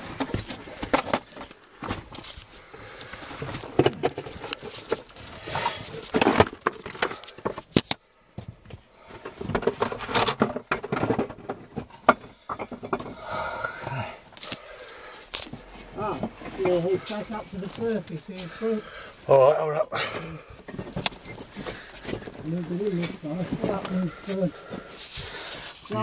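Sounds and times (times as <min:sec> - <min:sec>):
bricks scraping and clinking: 0:09.4 - 0:19.1.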